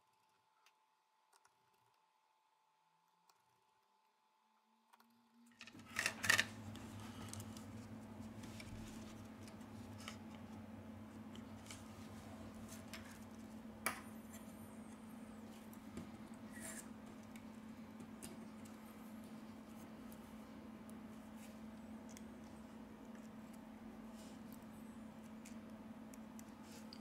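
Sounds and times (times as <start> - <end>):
steady low hum: 5.7 - 27.0.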